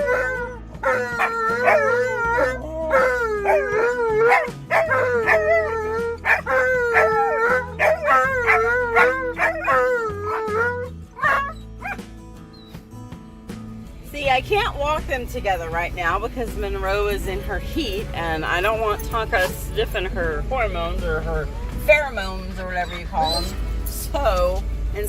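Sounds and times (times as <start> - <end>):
dog howling: 0.0 - 12.0.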